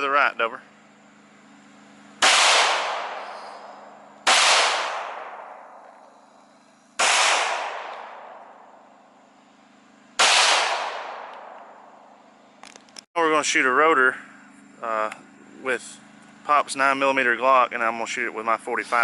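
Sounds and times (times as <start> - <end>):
gunshots with echo: 2.2 - 5.7, 7.0 - 8.6, 10.2 - 11.8.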